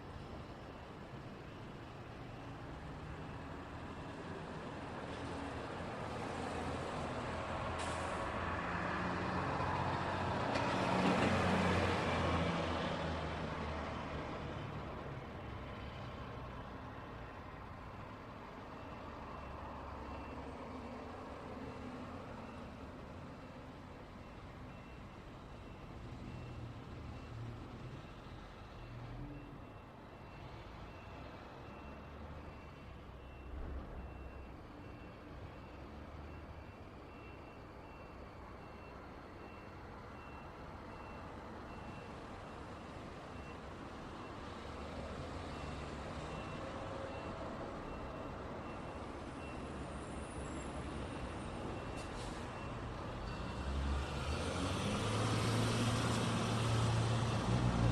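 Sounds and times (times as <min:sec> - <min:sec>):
road traffic rumbling: 0:00.0 - 0:57.9
reversing alarm beeping: 0:18.6 - 0:56.0.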